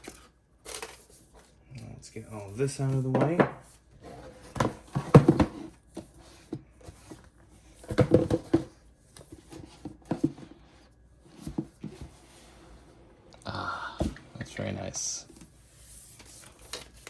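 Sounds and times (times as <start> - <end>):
packaging rustling: 16.0 - 17.0.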